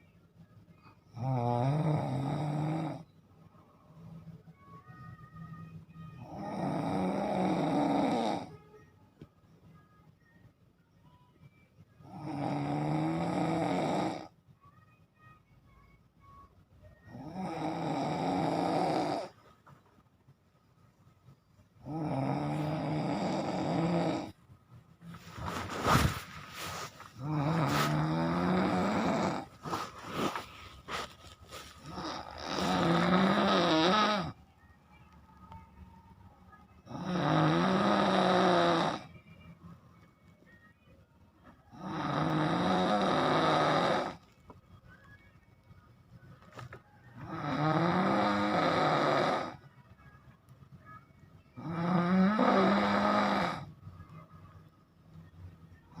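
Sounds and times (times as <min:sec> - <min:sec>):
person snoring loudly: 0:01.1 - 0:03.0, 0:06.2 - 0:08.6, 0:12.0 - 0:14.3, 0:17.1 - 0:19.4, 0:21.8 - 0:24.4, 0:26.7 - 0:31.1, 0:31.7 - 0:34.4, 0:36.9 - 0:39.1, 0:41.7 - 0:44.2, 0:47.2 - 0:49.6, 0:51.6 - 0:53.7
quiet breathing: 0:25.0 - 0:34.5.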